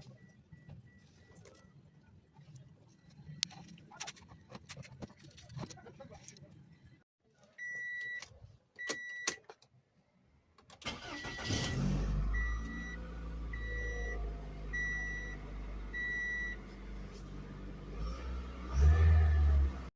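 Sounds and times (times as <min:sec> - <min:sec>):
dashboard warning chime beeping: 0:00.0 - 0:03.6, 0:07.6 - 0:09.4, 0:10.9 - 0:16.7
car engine cranking and running: 0:10.6 - 0:19.9.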